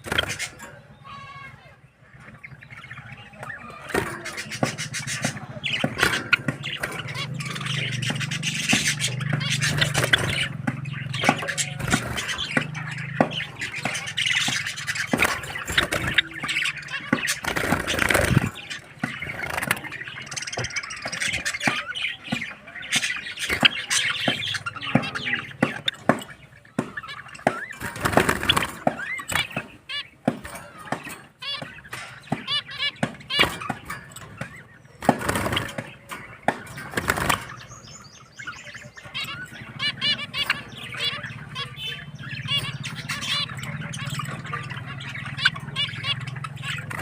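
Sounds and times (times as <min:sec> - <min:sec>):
small birds chirping: 0:00.0 - 0:47.0.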